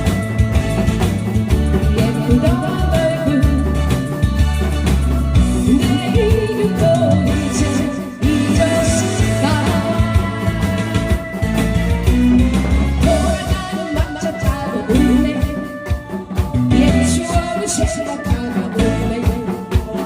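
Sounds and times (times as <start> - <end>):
amplified band with strong bass: 0.0 - 20.0
person singing: 1.7 - 4.4, 5.5 - 12.0, 13.0 - 20.0.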